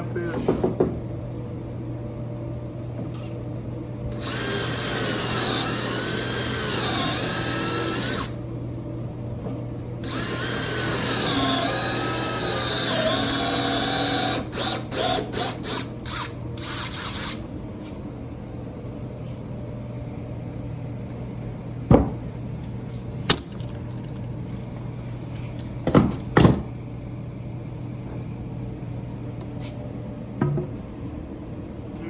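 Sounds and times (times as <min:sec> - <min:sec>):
power drill driving screws: 0:04.1 - 0:08.4, 0:10.0 - 0:17.4.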